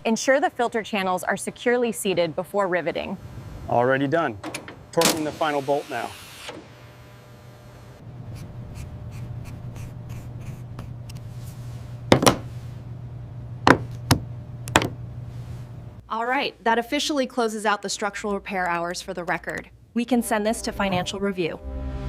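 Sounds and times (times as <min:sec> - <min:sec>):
steady low hum: 0:00.0 - 0:05.2, 0:06.5 - 0:16.1, 0:18.4 - 0:22.0
sharp knocks: 0:12.1 - 0:12.4, 0:13.7 - 0:15.0.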